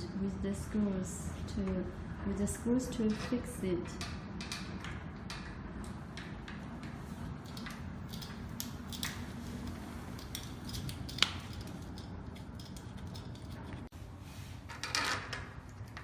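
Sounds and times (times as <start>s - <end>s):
steady low hum: 0.0s - 16.0s
handling and screwing noises: 4.0s - 13.9s.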